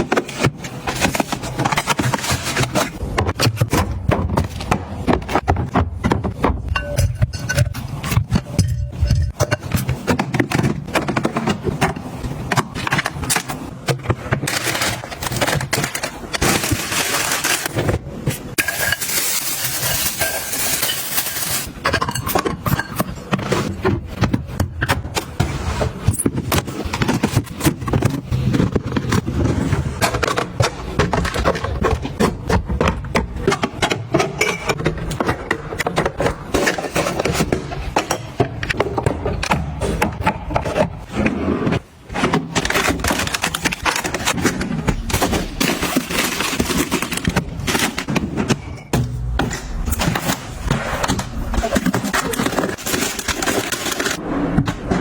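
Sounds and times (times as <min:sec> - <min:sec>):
household items clicking and scraping: 0:00.0 - 0:55.0.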